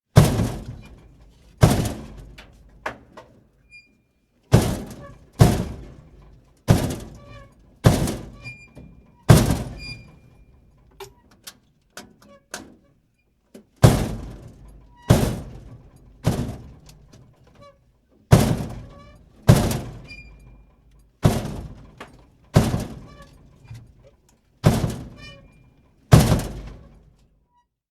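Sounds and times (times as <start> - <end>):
trash bin door banging shut: 0.2 - 2.4, 4.5 - 8.7, 9.3 - 10.2, 13.8 - 16.8, 18.3 - 20.5, 21.2 - 23.3, 24.6 - 25.4, 26.1 - 27.0.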